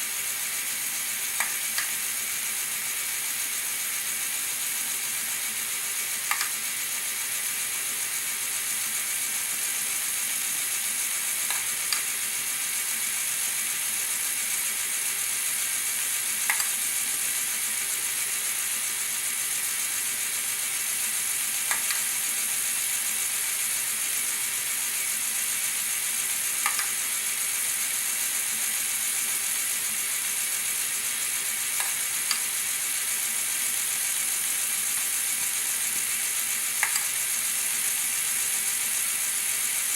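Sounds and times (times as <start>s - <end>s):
motor and gears whirring: 0.2s - 39.9s
sharp mechanism clicks: 6.2s - 6.6s, 11.4s - 12.1s, 16.4s - 16.8s, 21.6s - 22.1s, 26.6s - 27.0s, 36.8s - 37.2s.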